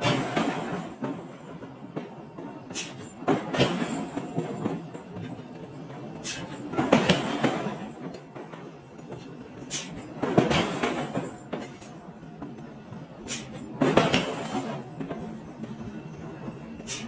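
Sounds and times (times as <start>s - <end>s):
metal clanks of forging machine: 0.0s - 1.2s, 2.7s - 5.4s, 6.2s - 8.2s, 9.1s - 12.0s, 13.2s - 15.3s, 16.8s - 17.0s
forging machine hissing: 2.6s - 4.2s, 6.2s - 7.5s, 9.6s - 10.7s, 13.1s - 14.8s, 16.6s - 17.0s.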